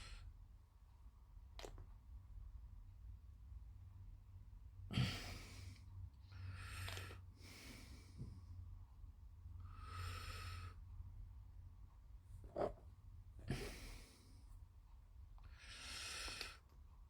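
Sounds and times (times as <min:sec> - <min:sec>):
faint steady low hum: 0:00.0 - 0:17.0
person breathing: 0:04.9 - 0:08.6, 0:09.6 - 0:10.8, 0:13.4 - 0:14.5.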